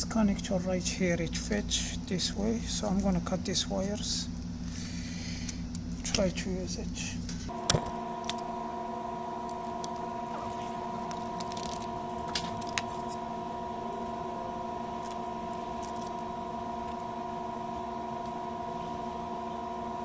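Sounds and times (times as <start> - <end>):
electrical hum: 0.0 - 20.0
wires being snipped: 7.5 - 8.5, 9.4 - 19.0.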